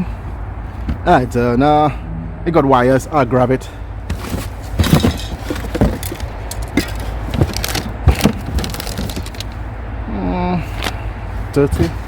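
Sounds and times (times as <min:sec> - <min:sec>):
steady low rumble: 0:00.0 - 0:12.0
junk objects knocking and rattling: 0:00.7 - 0:01.1, 0:04.0 - 0:09.7, 0:11.6 - 0:12.0.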